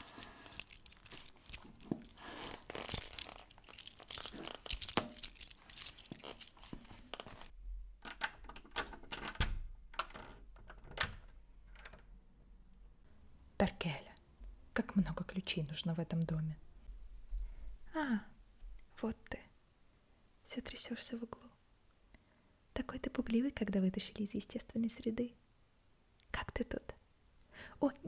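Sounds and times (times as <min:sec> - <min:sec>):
leather creaking: 0:00.0 - 0:07.5
metal keys jangling in a lock: 0:00.0 - 0:07.5, 0:08.1 - 0:11.1.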